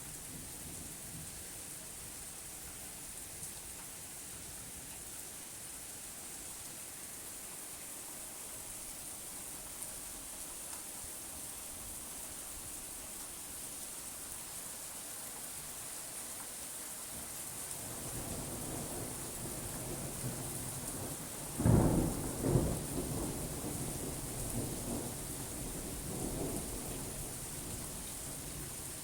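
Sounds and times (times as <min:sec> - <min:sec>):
steady rain: 0:00.0 - 0:29.0
rolling thunder: 0:21.6 - 0:27.9.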